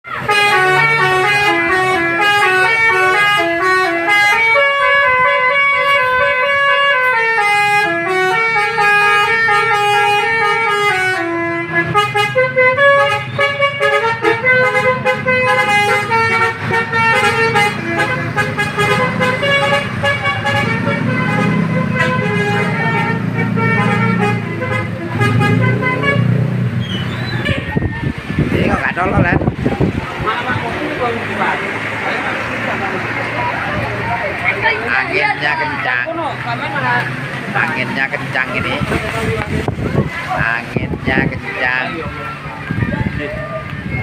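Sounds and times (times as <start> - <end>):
multi-tone air horn melody: 0.2 - 26.6.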